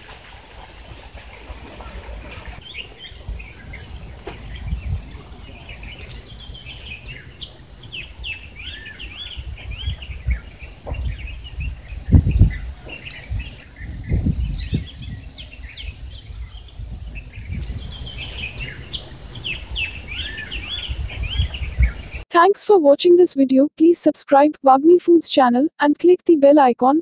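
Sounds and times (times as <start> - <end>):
steady high hiss: 0.0 - 22.3
small birds chirping: 0.8 - 22.2
low rumble: 2.0 - 22.2.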